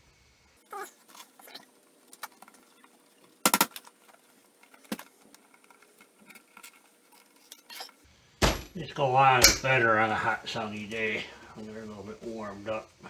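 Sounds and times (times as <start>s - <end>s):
parts clattering: 0.7s - 8.0s
small hard parts clicking: 0.7s - 8.0s.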